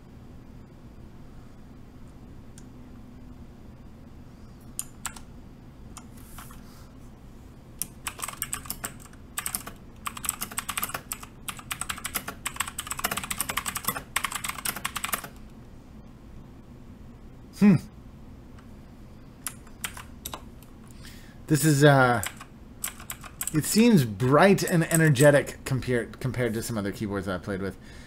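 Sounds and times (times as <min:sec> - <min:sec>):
mechanical keyboard typing clicks: 0:04.8 - 0:05.3, 0:07.8 - 0:15.4, 0:19.4 - 0:20.4, 0:22.2 - 0:23.6.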